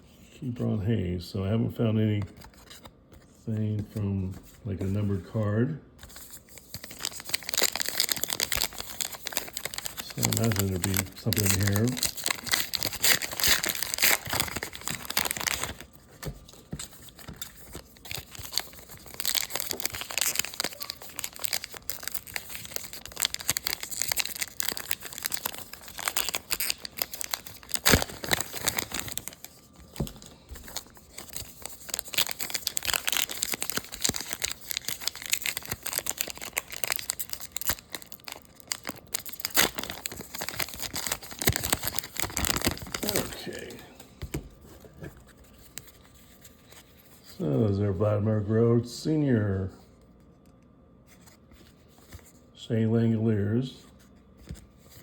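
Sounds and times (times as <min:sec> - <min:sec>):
cards being handled: 0:02.2 - 0:05.2, 0:06.0 - 0:47.4
plastic wrappers crinkling and tearing: 0:06.1 - 0:44.4.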